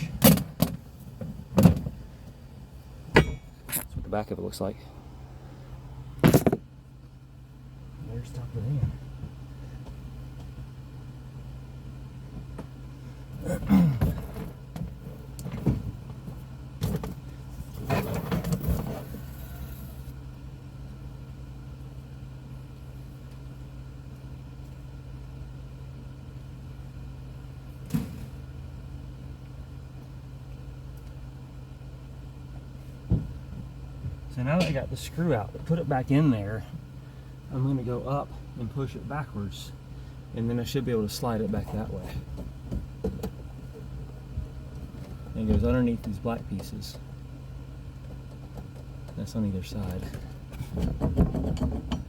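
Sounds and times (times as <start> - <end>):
steady low hum: 0.0 - 52.0
knocks and clatter of hand work: 50.2 - 52.0.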